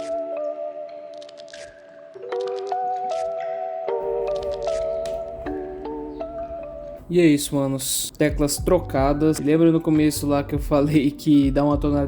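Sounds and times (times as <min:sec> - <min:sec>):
held music chords: 0:04.0 - 0:12.0.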